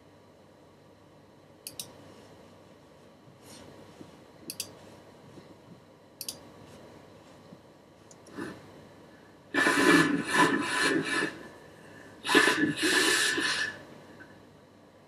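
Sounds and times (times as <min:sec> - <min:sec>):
sharp double clicks: 0:01.6 - 0:02.0, 0:04.5 - 0:04.8, 0:06.2 - 0:06.4.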